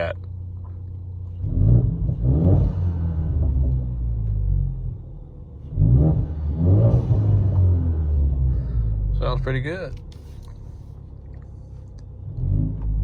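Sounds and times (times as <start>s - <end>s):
car engine idling and revving: 0.0s - 13.0s.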